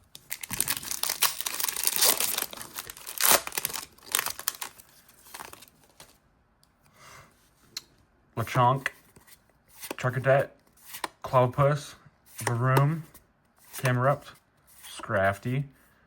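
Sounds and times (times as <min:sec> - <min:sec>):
foil wrapper tearing and crinkling: 0:00.1 - 0:05.7.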